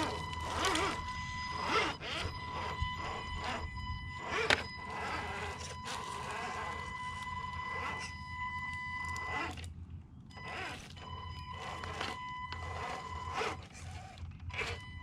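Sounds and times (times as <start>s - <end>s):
electric motor whining: 0.0s - 15.0s.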